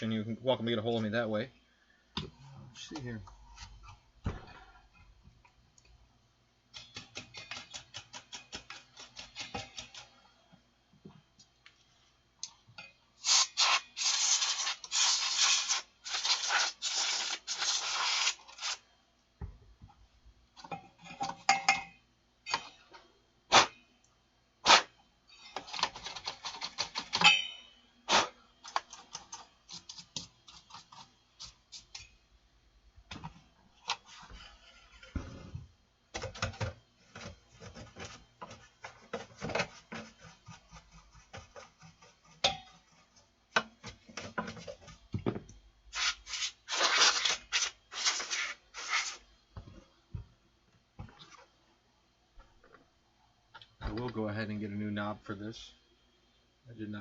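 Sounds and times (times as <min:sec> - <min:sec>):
scratchy rasping: 0:13.2 - 0:18.8, 0:37.5 - 0:43.2.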